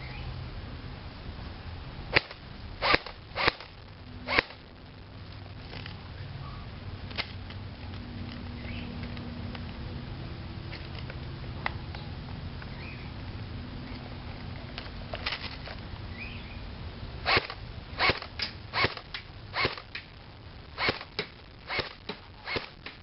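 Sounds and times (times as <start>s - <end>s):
airsoft rifle shots: 2.1s - 4.6s, 17.2s - 20.1s, 20.8s - 23.0s.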